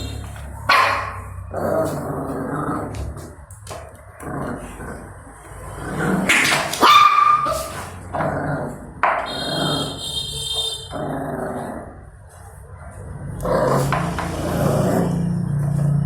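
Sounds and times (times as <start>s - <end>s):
puppies barking: 0.0s - 2.0s, 6.2s - 8.1s
puppies growling: 0.0s - 6.8s, 7.5s - 9.9s, 10.9s - 15.9s.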